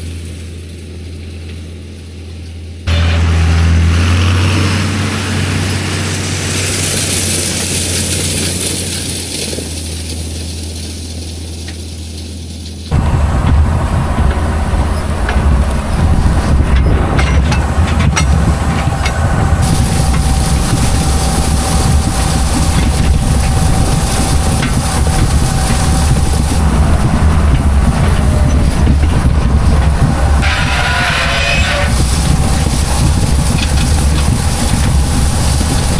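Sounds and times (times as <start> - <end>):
tractor engine droning: 0.0 - 35.9
hay equipment rattling: 5.4 - 35.9.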